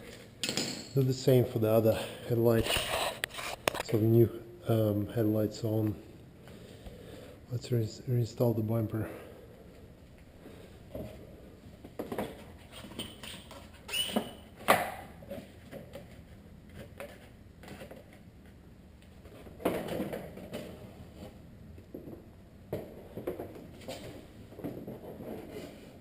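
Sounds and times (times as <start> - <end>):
short squeak: 12.7 - 14.4.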